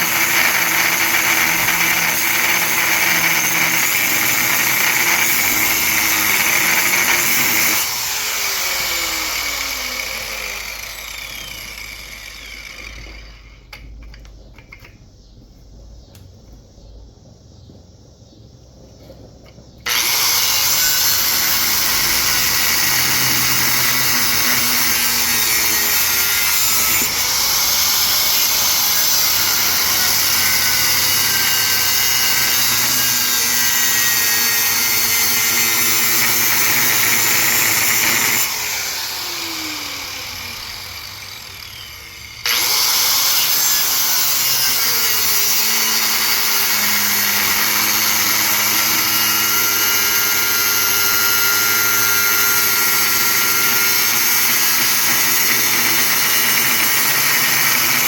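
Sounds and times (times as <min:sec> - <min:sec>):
power tool cutting metal: 0:00.0 - 0:13.9, 0:19.8 - 0:58.0.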